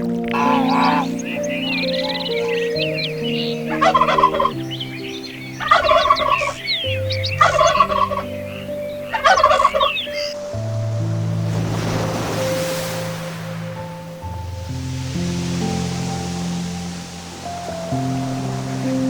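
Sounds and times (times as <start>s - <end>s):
fowl gobbling calls: 0.0s - 10.4s
soft background music: 0.0s - 19.0s.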